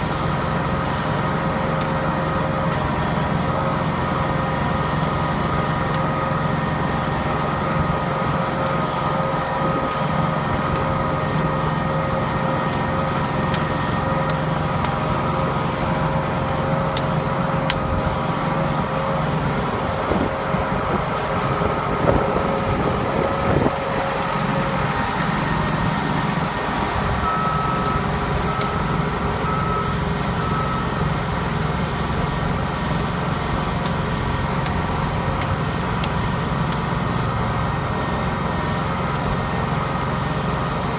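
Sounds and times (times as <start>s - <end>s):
diesel engine running: 0.0s - 40.9s
reversing alarm beeping: 24.8s - 34.5s.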